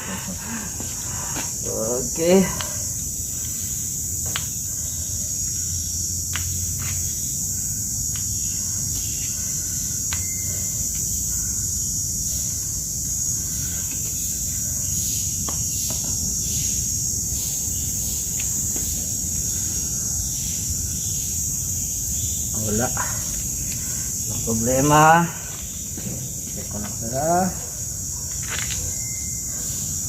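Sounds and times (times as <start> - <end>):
high-pitched hiss: 0.0 - 27.6.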